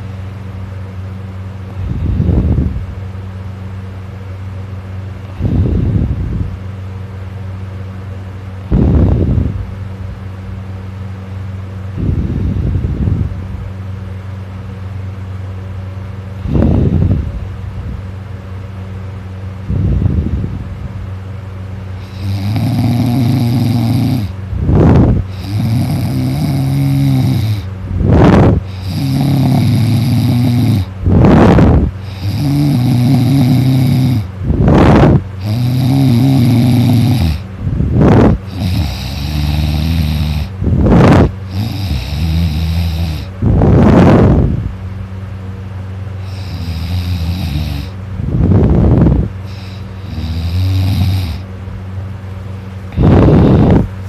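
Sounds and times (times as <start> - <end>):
person snoring: 22.0 - 44.5, 46.2 - 51.4, 52.9 - 53.9
sharp noisy breath: 48.6 - 51.5, 52.9 - 53.9.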